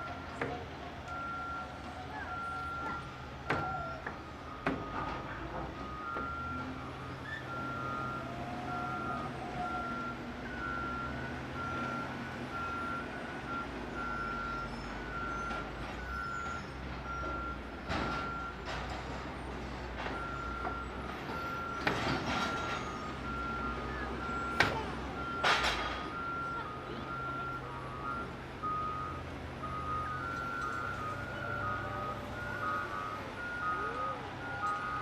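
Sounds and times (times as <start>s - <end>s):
low engine running: 0.0s - 35.0s
backup alarm beeping: 1.0s - 18.7s, 20.1s - 35.0s
metal clanks and bangs: 24.6s - 26.3s.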